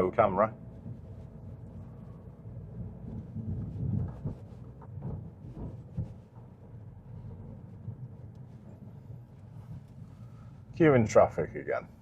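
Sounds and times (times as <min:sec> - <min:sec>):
engine and road rumble: 0:00.0 - 0:12.0
low thumps: 0:02.6 - 0:08.3.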